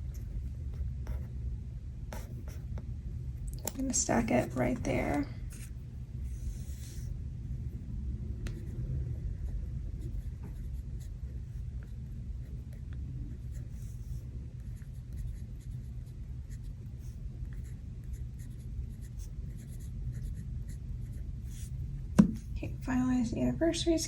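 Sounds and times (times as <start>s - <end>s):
low rumble: 0.0s - 14.7s
pen scratching on paper: 2.1s - 2.7s, 4.2s - 7.1s, 10.0s - 22.5s.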